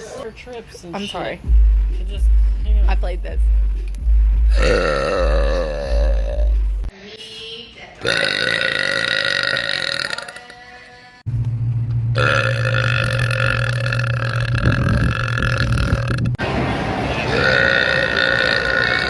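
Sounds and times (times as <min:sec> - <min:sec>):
woman belching: 0:04.5 - 0:06.6, 0:08.0 - 0:10.5, 0:12.2 - 0:16.4, 0:17.3 - 0:19.0.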